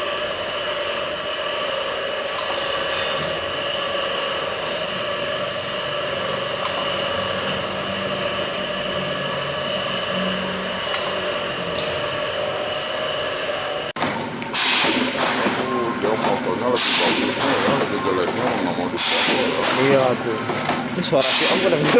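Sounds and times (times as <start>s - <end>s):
packaging machine humming: 0.0s - 21.9s
held machine tones: 15.1s - 21.9s.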